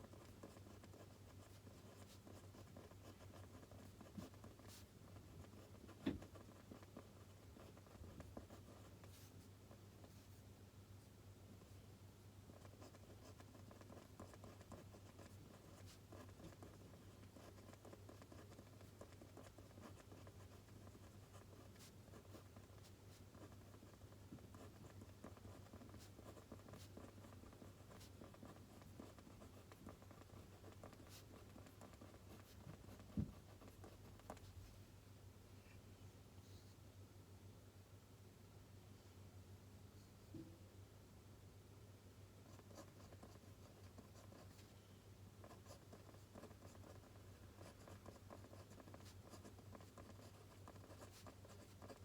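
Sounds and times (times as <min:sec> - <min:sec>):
pen scratching on paper: 0:00.0 - 0:10.4, 0:12.5 - 0:34.6, 0:42.5 - 0:44.7, 0:45.4 - 0:52.0.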